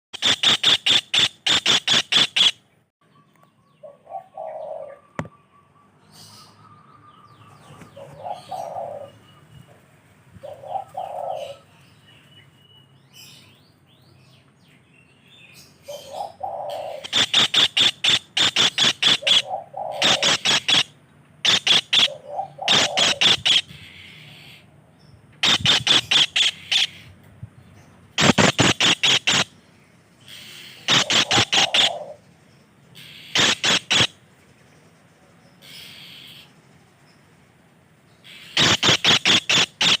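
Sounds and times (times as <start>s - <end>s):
bird rattling calls: 0.2s - 2.6s, 15.9s - 24.6s, 25.4s - 27.1s, 28.2s - 29.6s, 30.2s - 32.2s, 33.0s - 34.2s, 38.2s - 40.0s
low hooting bird notes: 0.2s - 9.6s, 10.4s - 11.8s, 15.8s - 24.7s, 30.2s - 32.3s
faint high bird calls: 0.2s - 9.8s, 10.4s - 24.7s, 25.4s - 27.2s, 28.2s - 34.2s, 34.8s - 37.3s, 38.2s - 40.0s.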